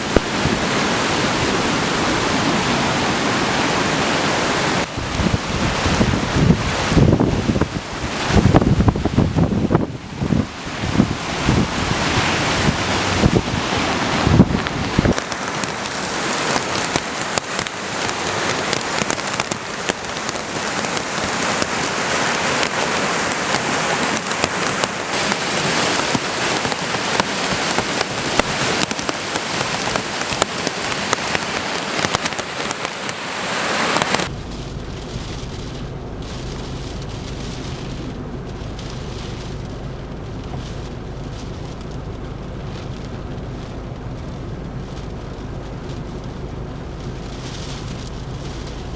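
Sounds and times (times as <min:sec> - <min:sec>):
heavy rain pouring: 0:00.0 - 0:48.9
low rumble: 0:34.3 - 0:48.9.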